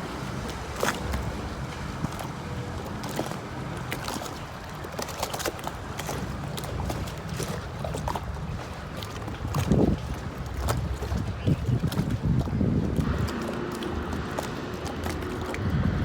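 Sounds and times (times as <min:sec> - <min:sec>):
water lapping and splashing: 0:00.0 - 0:16.0
steady low rumble: 0:12.8 - 0:16.0.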